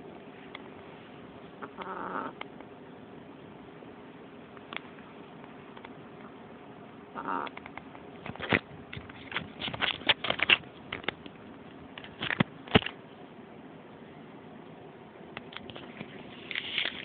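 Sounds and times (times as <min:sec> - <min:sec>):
dog snoring and snuffling: 0:01.6 - 0:02.4.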